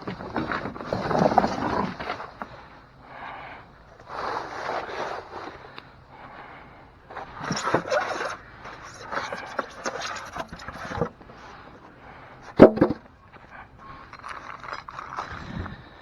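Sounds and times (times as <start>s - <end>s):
scraping and handling noises: 7.1s - 11.9s, 12.5s - 15.8s.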